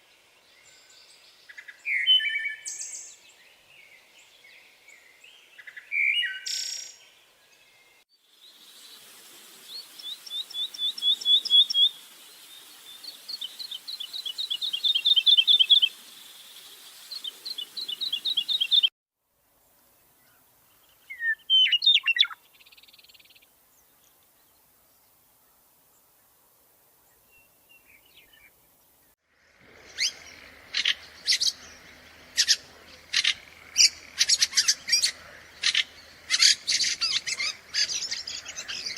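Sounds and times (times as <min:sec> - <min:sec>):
songbird trilling: 0:09.7 - 0:12.0, 0:12.8 - 0:16.0, 0:17.1 - 0:18.9, 0:21.1 - 0:22.4, 0:29.7 - 0:38.9.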